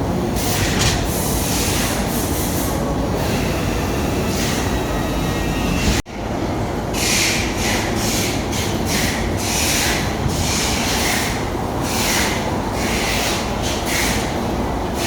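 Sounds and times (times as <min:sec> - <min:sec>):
factory machinery running: 0:00.0 - 0:15.0.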